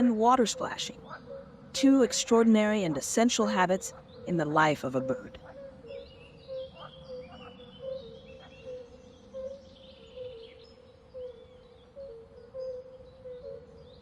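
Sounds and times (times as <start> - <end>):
small birds chirping and whistling: 3.6 - 14.0.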